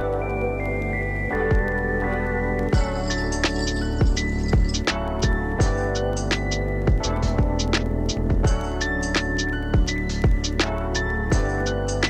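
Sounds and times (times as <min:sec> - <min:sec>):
kick drum: 0:01.5 - 0:01.7, 0:02.8 - 0:03.0, 0:04.0 - 0:05.9, 0:06.9 - 0:07.7, 0:08.3 - 0:08.7, 0:09.8 - 0:10.5, 0:11.3 - 0:11.6.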